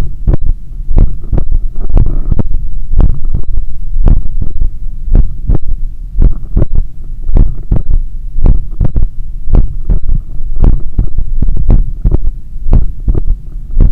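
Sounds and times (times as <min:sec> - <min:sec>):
heartbeat through a stethoscope: 0:00.0 - 0:13.9
steady low hum: 0:00.0 - 0:13.9.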